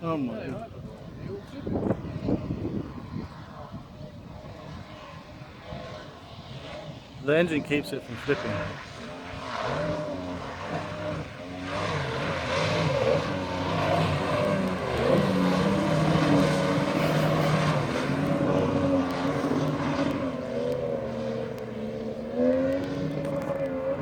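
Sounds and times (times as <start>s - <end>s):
outboard motor running hard: 0.0s - 24.0s
wind noise: 0.4s - 7.3s.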